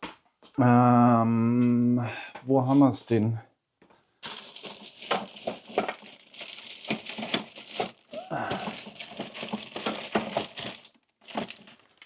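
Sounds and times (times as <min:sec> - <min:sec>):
rummaging through tools: 0:04.2 - 0:12.0
rustling and crinkling: 0:04.2 - 0:12.0.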